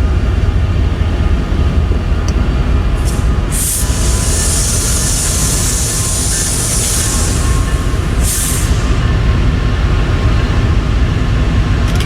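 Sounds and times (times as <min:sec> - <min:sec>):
train rumbling on rails: 0:00.0 - 0:12.0
high hissing noise: 0:02.9 - 0:09.3.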